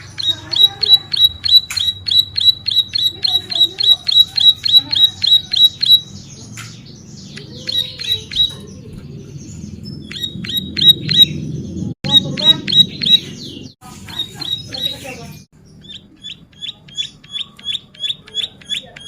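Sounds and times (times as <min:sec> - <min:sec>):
bird singing sharp high notes: 0:00.0 - 0:06.1.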